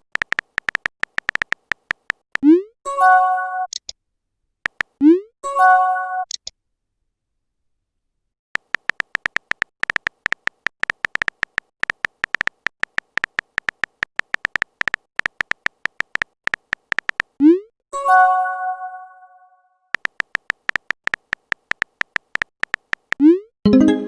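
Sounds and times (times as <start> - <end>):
phone keyboard typing clicks: 0.0 - 2.4, 4.6 - 5.0, 8.6 - 17.4, 20.0 - 23.3.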